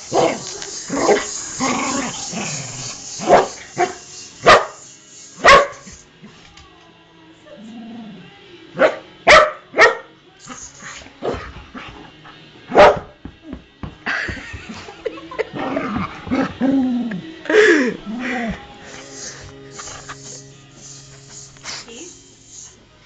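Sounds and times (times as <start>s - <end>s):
dog barking and yelping: 3.2s - 4.8s, 5.4s - 5.8s.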